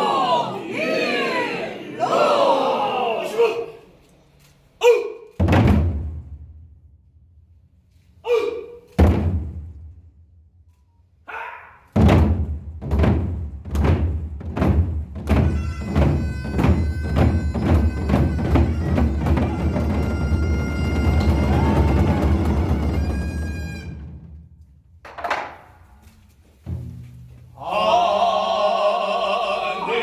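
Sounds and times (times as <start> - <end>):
deep ceremonial drum strokes: 12.0 - 24.4
high wind instrument tone: 15.4 - 24.0.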